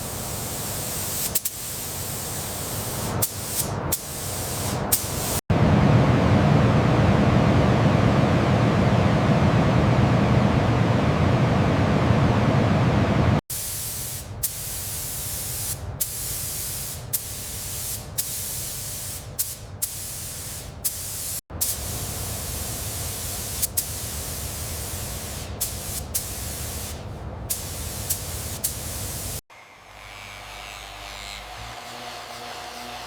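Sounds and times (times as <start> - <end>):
paint spray gun hissing: 0.0 - 5.4, 13.5 - 29.4.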